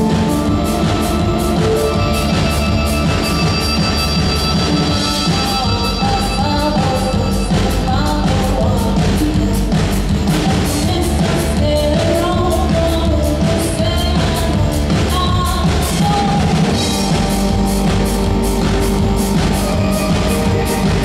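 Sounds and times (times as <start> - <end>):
drum kit beat and cymbals: 0.0 - 21.0
rock band playing: 0.0 - 21.0
woman singing: 5.0 - 17.6.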